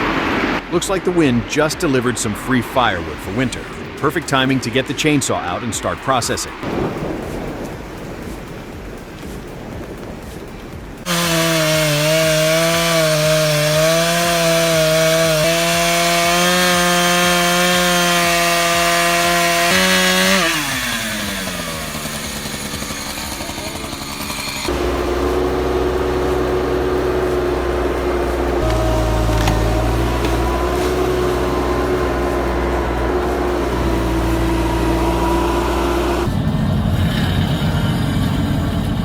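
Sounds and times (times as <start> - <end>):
chainsaw cutting wood: 11.0 - 36.3
low steady engine: 21.0 - 39.0.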